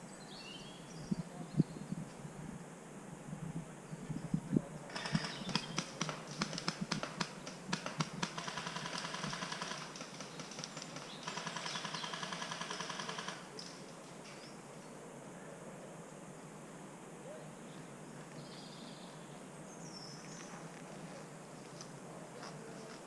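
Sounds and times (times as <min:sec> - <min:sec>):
airsoft gun full-auto bursts: 0:04.9 - 0:13.5.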